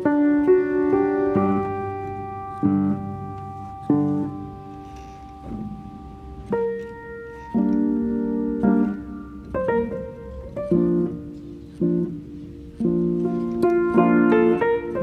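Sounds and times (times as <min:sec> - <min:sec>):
slow piano chords: 0:00.0 - 0:15.0.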